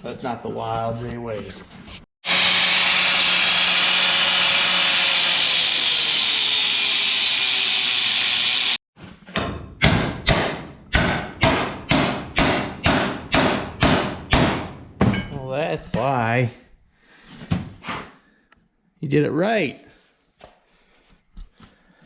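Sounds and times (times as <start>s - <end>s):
power tool grinding: 2.2s - 8.8s.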